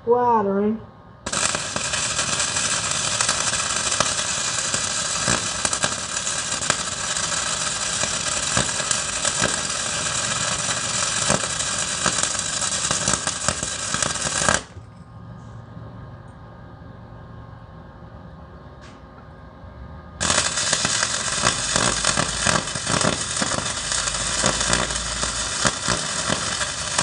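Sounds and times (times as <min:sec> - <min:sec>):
arc welding crackling: 0:01.2 - 0:14.9, 0:20.2 - 0:27.0.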